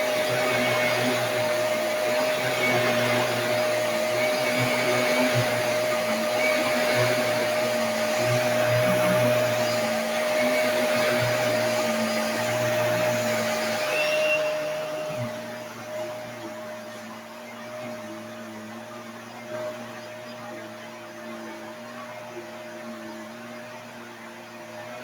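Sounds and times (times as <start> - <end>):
vacuum cleaner running: 0.0 - 25.0.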